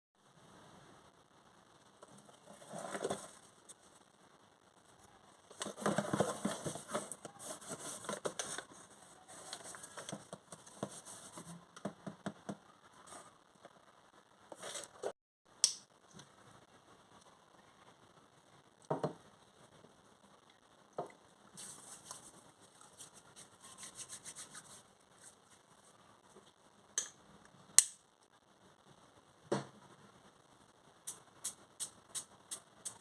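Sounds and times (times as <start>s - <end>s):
clicks and taps: 11.8s - 12.6s.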